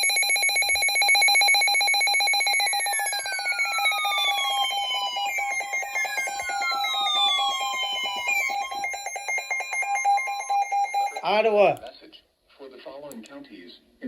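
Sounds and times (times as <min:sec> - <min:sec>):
pulsing alarm tone: 0:00.0 - 0:11.4
tones sliding down in pitch: 0:02.6 - 0:11.4.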